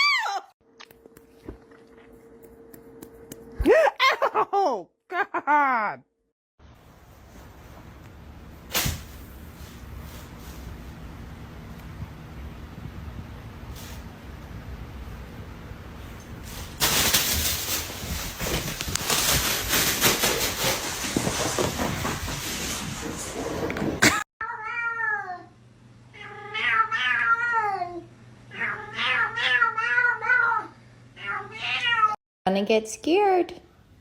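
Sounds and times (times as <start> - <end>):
cat meowing: 26.2 - 32.2.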